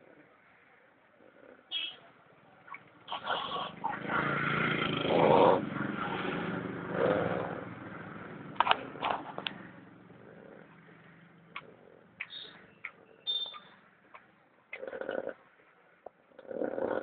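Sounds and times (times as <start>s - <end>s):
loud rough snoring: 3.2s - 7.7s, 10.2s - 10.8s, 14.8s - 15.4s, 16.4s - 17.0s.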